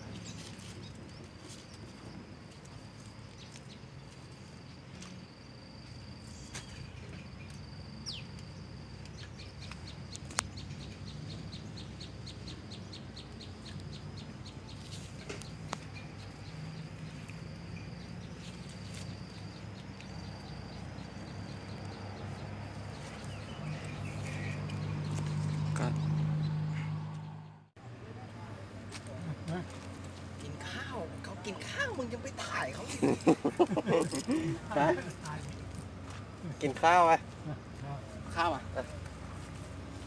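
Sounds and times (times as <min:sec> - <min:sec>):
bird chirping: 0:00.0 - 0:27.7.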